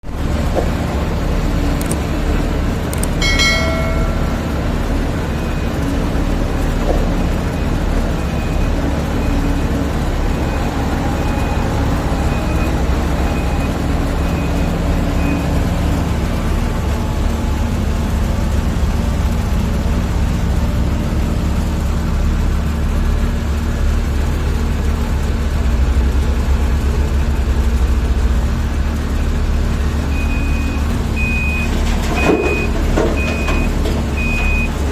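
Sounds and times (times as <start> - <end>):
excavator diesel engine rumbling: 0.0 - 34.9
backup alarm beeping: 3.0 - 4.6.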